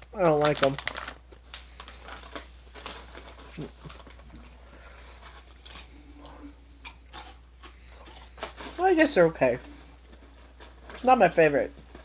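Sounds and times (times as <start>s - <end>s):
chewing crunchy chips: 5.2s - 8.8s.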